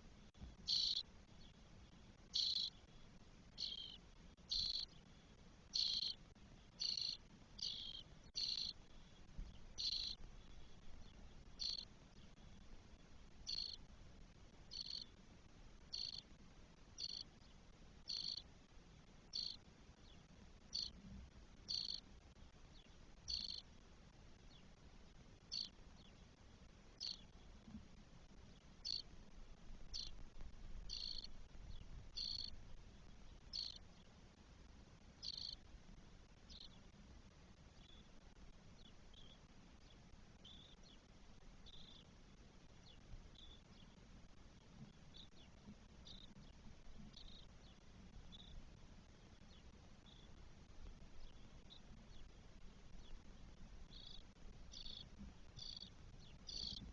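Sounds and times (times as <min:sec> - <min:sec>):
nestlings calling: 0:00.6 - 0:01.0, 0:02.3 - 0:02.9, 0:03.5 - 0:05.0, 0:05.7 - 0:12.6, 0:13.4 - 0:13.8, 0:14.7 - 0:15.2, 0:15.9 - 0:16.2, 0:17.0 - 0:17.2, 0:18.1 - 0:18.4, 0:19.3 - 0:19.6, 0:20.7 - 0:21.0, 0:21.7 - 0:22.0, 0:23.3 - 0:23.6, 0:25.4 - 0:26.2, 0:27.0 - 0:27.4, 0:28.8 - 0:29.1, 0:29.9 - 0:30.2, 0:30.8 - 0:32.5, 0:33.3 - 0:33.8, 0:35.2 - 0:35.6, 0:53.8 - 0:56.9.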